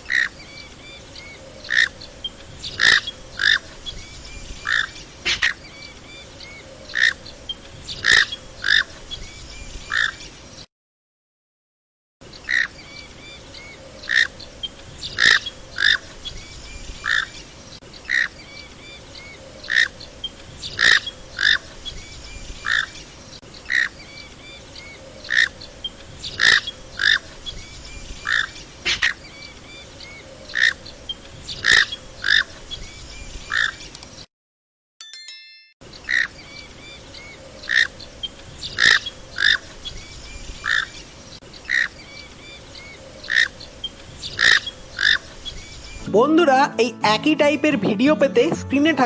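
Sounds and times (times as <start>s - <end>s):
duck calling: 2.8s - 3.6s, 15.2s - 16.0s, 20.8s - 21.6s.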